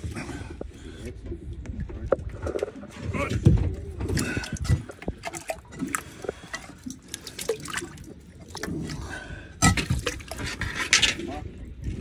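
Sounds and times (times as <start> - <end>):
water dripping and splashing: 4.0 - 10.7.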